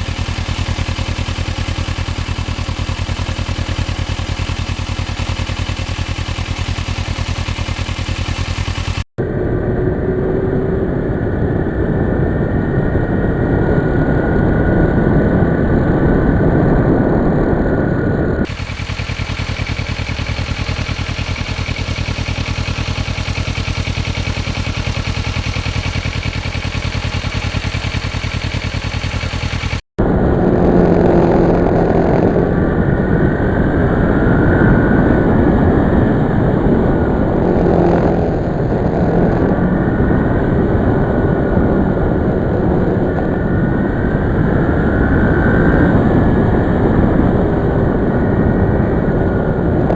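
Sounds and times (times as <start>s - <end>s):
motorcycle engine running: 0.0s - 10.8s, 17.6s - 49.9s
wind and road noise: 0.0s - 49.9s.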